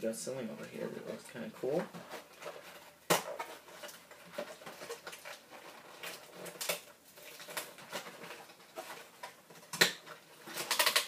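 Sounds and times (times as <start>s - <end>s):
box packaging clicks and rustles: 0.6s - 11.0s.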